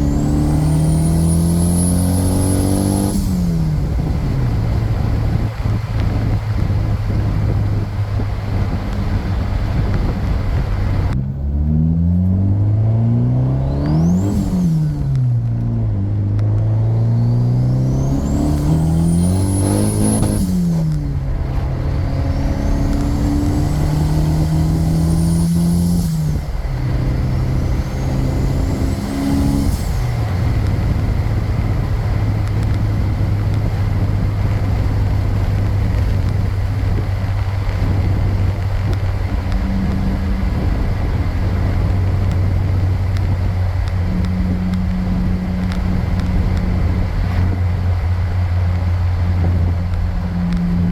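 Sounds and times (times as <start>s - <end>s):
engine accelerating through gears: 0.0s - 50.9s.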